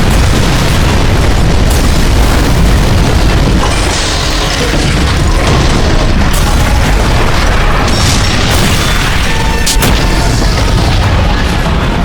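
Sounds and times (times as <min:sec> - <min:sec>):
sharp cracks: 0:00.0 - 0:11.8
booming explosions: 0:00.0 - 0:12.0
music: 0:00.0 - 0:12.0.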